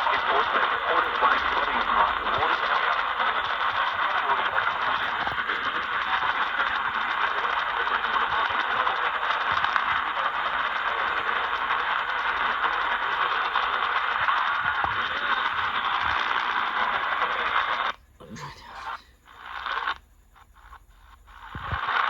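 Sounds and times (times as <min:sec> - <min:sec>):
radio static hiss: 0:00.0 - 0:22.0.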